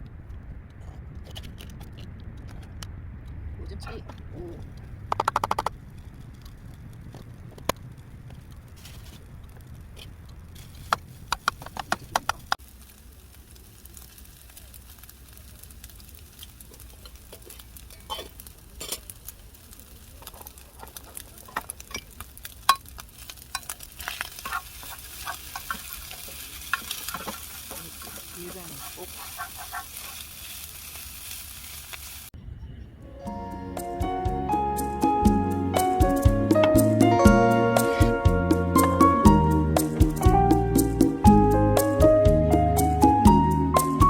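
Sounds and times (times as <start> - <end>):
food sizzling in a pan: 12.6 - 32.4
spatula tapping and scraping pan: 23.5 - 30.2.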